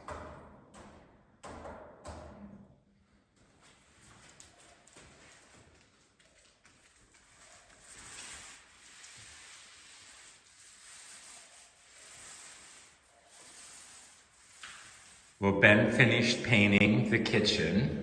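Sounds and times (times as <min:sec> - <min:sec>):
paint roller swishing strokes: 0:06.7 - 0:15.5.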